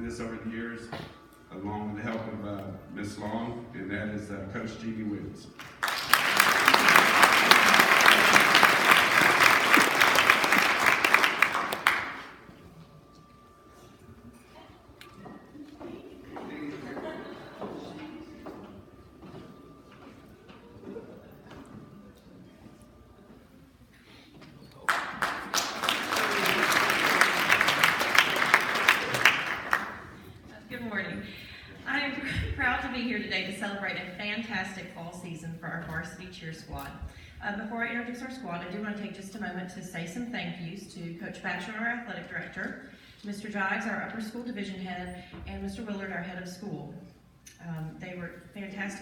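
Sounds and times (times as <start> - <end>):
audience applauding: 5.6 - 12.4, 24.8 - 30.3.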